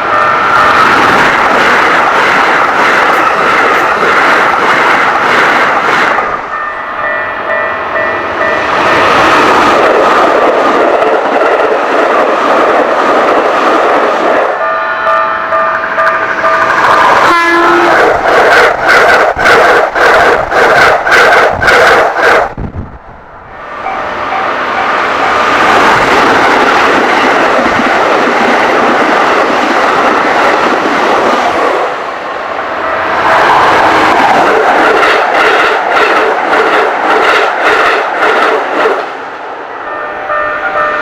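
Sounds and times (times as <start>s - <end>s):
train wheels clacking over joints: 15.1s - 22.5s, 33.4s - 39.0s
train horn: 17.0s - 18.2s, 39.8s - 41.0s.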